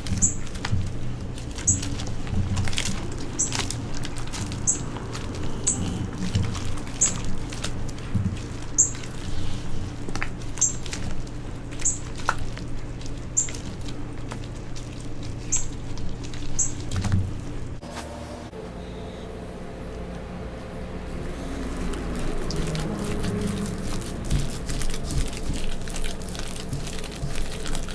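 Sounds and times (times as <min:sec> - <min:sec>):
chalk being crushed: 0:21.2 - 0:27.9.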